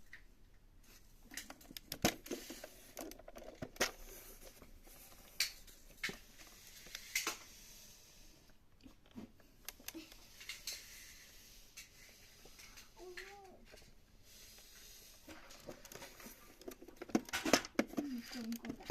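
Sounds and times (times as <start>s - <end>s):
plastic toy parts clicking: 1.3s - 4.6s, 15.3s - 18.9s.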